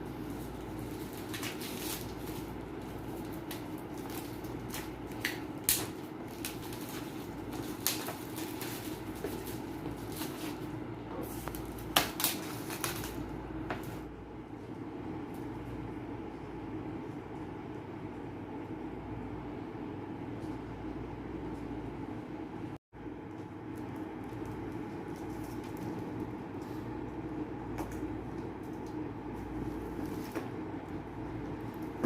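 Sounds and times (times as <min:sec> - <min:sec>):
steady background hum: 0:00.0 - 0:32.0
packaging rustling and clicking: 0:00.3 - 0:10.6, 0:11.2 - 0:13.3.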